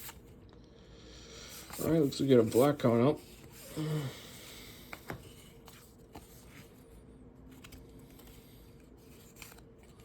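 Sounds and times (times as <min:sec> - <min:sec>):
trading cards being handled: 0:04.8 - 0:10.0.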